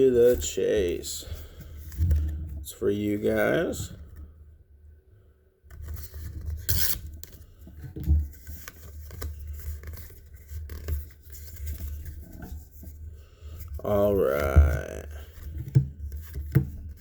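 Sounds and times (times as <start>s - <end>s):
cards rustling: 8.2s - 12.8s, 13.7s - 17.0s.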